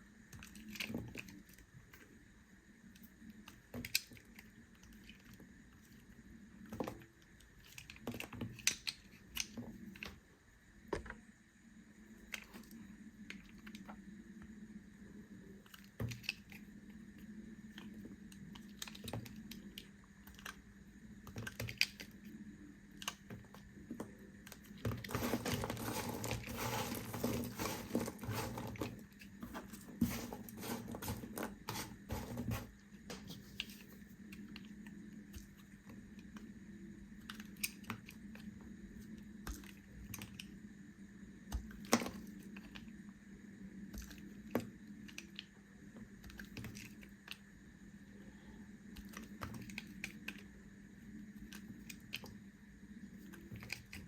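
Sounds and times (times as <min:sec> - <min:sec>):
knife cutting through soap: 0:24.8 - 0:32.7.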